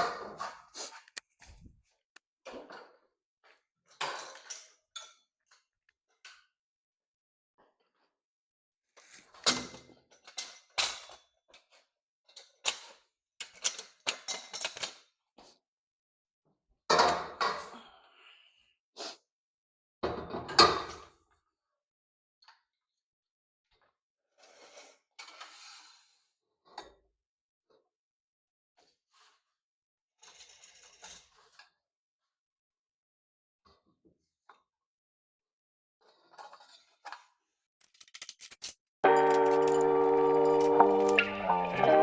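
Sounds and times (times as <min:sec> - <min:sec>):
metal tools clanking: 0:37.8 - 0:42.0.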